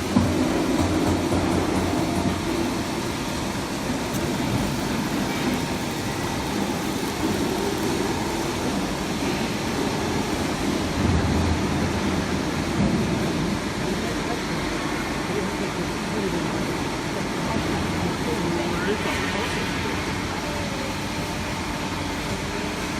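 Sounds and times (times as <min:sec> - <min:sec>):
machine humming: 0:00.0 - 0:22.9.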